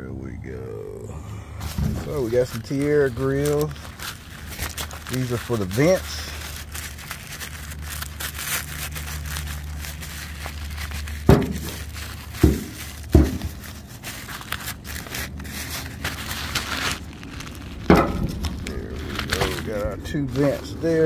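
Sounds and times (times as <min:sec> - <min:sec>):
steady low hum: 0:00.0 - 0:21.0
packaging crinkling and tearing: 0:01.6 - 0:21.0
dull thumps: 0:11.2 - 0:13.8.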